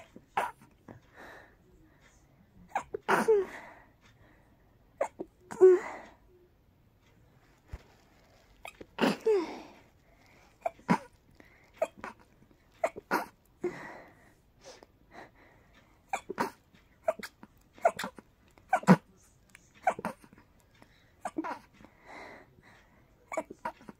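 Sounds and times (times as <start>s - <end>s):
breathy in-breaths: 9.2s - 10.6s, 13.6s - 16.0s, 20.7s - 23.2s.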